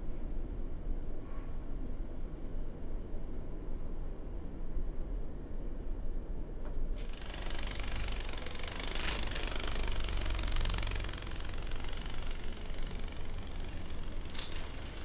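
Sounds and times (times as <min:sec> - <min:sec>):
beetle wings buzzing: 0:07.0 - 0:15.0.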